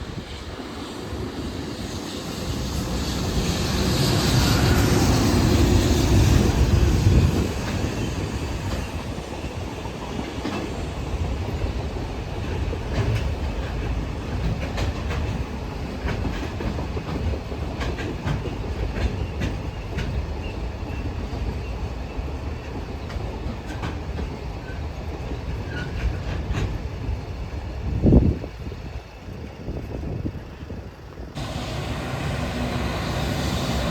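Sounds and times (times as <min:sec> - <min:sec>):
freight train passing: 0:00.0 - 0:33.9
wheels clicking over rail joints: 0:11.5 - 0:21.8.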